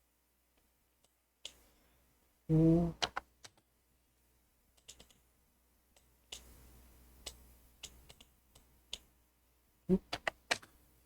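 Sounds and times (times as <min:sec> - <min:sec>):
mouse and keyboard clicks: 0:03.0 - 0:03.7, 0:04.8 - 0:05.2, 0:07.2 - 0:09.1, 0:10.0 - 0:10.8.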